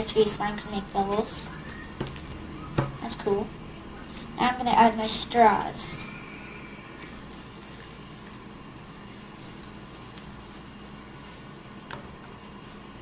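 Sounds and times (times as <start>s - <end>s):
low room hum: 0.0s - 13.0s
slime squishing: 6.9s - 12.8s.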